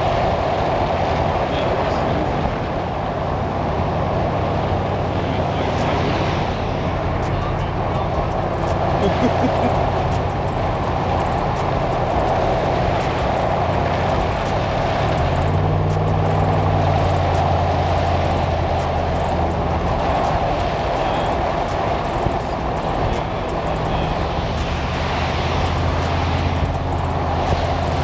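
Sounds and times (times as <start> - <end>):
car engine drone: 0.0 - 28.0
tyre and road noise: 0.0 - 28.0.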